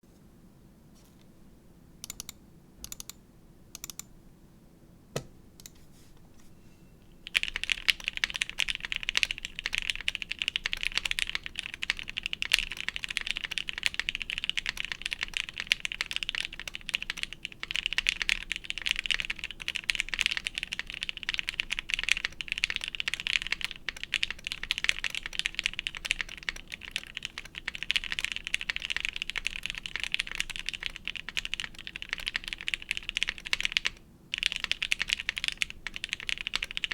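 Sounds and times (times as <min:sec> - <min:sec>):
typing on mechanical keyboard: 0:07.2 - 0:36.9.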